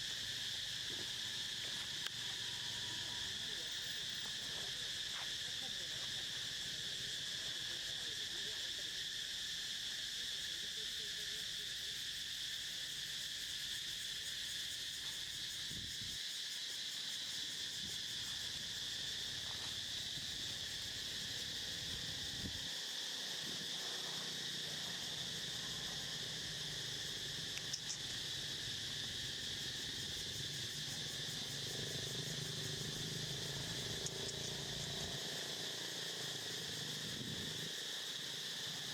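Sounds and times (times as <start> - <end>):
insects trilling: 0.0 - 38.9
faint click: 27.6 - 28.1.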